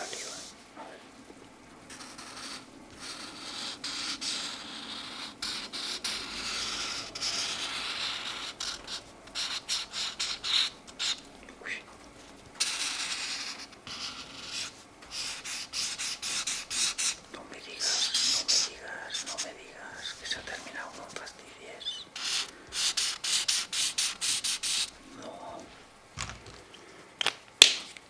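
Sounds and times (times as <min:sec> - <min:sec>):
felt-tip marker scratching paper: 0:01.9 - 0:11.3, 0:12.1 - 0:25.0.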